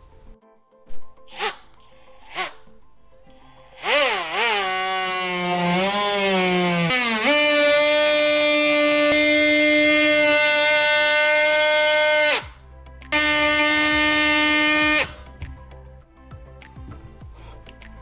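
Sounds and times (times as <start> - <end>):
power drill drilling through drywall: 3.8 - 15.2.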